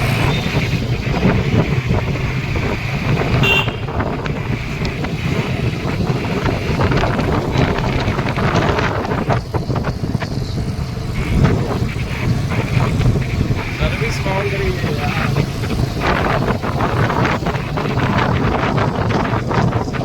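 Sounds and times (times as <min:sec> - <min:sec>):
motorbike engine running: 0:00.0 - 0:20.0
wind rushing over microphone: 0:00.0 - 0:20.0.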